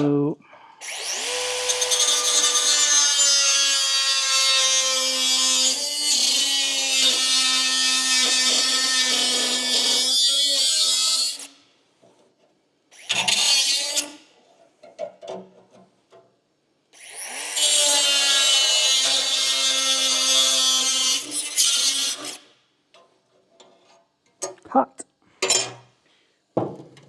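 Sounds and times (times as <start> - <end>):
power tool cutting steel: 0.8 - 11.6, 13.0 - 14.2, 17.0 - 22.5.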